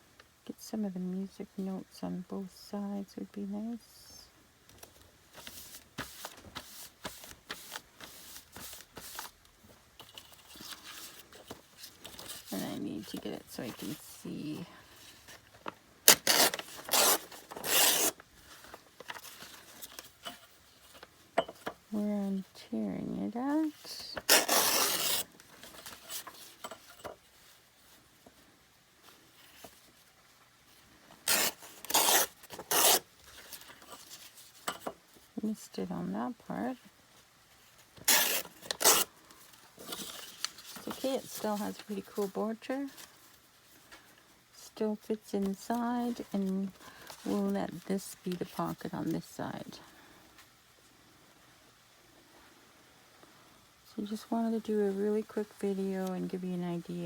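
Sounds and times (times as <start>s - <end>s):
paper rustling and crackling: 4.7s - 21.2s, 37.5s - 44.2s
paper ripping: 16.1s - 20.0s, 24.2s - 26.2s, 31.3s - 33.0s, 38.0s - 39.1s.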